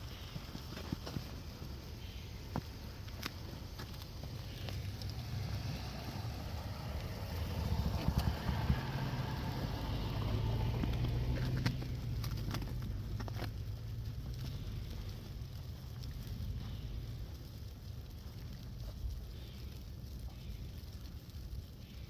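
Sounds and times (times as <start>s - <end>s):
footsteps crunching in snow: 0.0s - 13.6s
car passing rumble: 3.6s - 19.5s.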